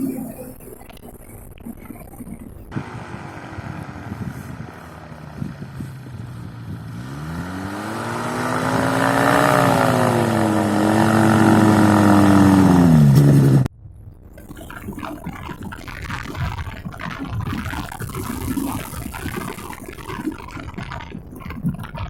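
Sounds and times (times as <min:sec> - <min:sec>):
paramotor engine running: 0:02.7 - 0:13.7
quiet rushing noise: 0:02.7 - 0:13.7.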